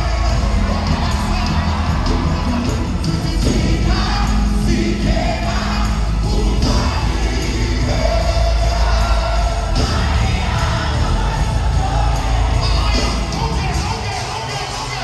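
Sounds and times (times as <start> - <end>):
crowd voices: 0.0 - 15.0
gospel singers with band: 0.0 - 15.0.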